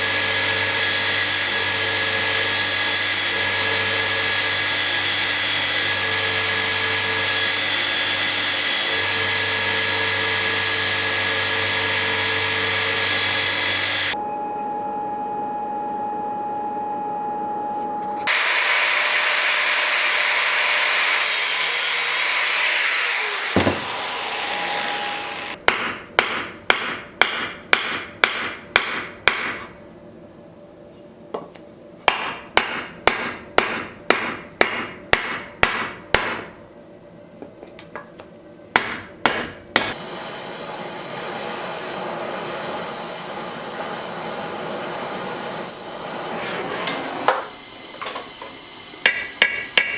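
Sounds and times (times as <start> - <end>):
power tool running: 0.0 - 14.2, 18.2 - 25.6
hammer striking metal: 25.6 - 29.7, 32.1 - 36.6, 38.7 - 40.0, 49.0 - 49.9.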